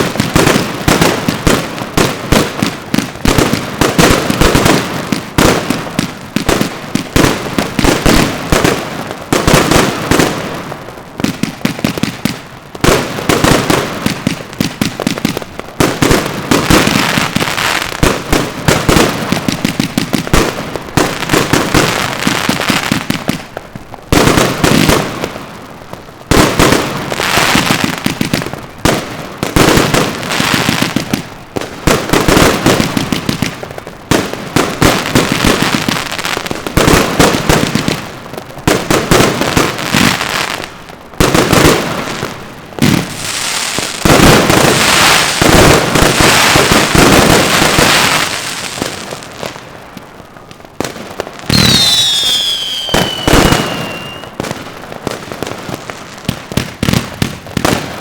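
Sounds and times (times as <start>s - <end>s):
firework whistles falling in pitch: 51.5s - 54.4s.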